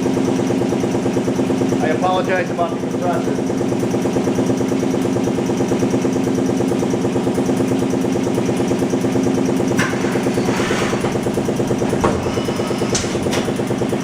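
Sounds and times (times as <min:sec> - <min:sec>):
air compressor pulsing: 0:00.0 - 0:14.0
machine tool changer clunk: 0:09.6 - 0:14.0.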